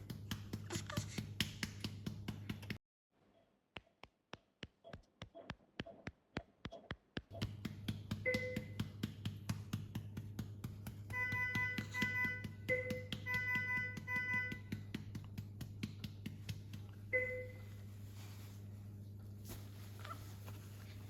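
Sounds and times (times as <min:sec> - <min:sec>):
low steady hum: 0:07.3 - 0:21.0.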